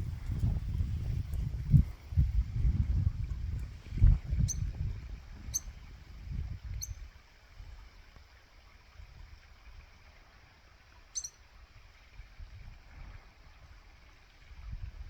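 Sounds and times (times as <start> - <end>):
bird chirps: 4.4 - 4.7, 11.2 - 11.4.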